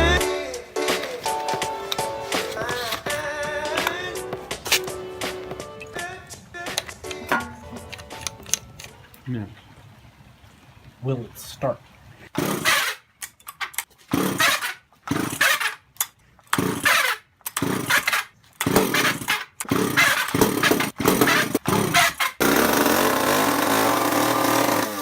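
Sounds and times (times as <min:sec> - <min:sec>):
chainsaw engine running: 0:12.4 - 0:12.9, 0:14.1 - 0:15.7, 0:16.5 - 0:25.0
chainsaw pull-start cranking: 0:12.4 - 0:25.0.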